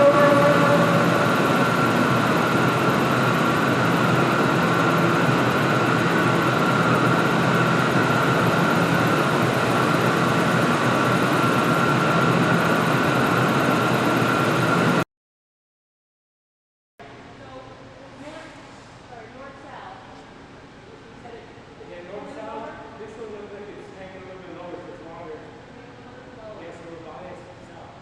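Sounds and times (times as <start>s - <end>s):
constant whine: 0.0s - 15.0s
vehicle running noise: 0.0s - 15.0s.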